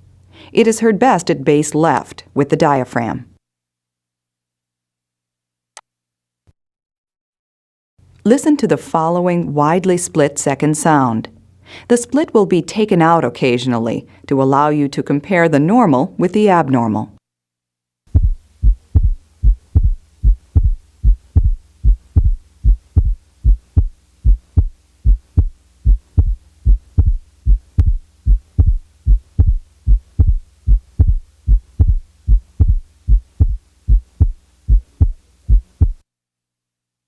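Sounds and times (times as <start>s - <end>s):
heartbeat through stethoscope: 18.1s - 36.0s.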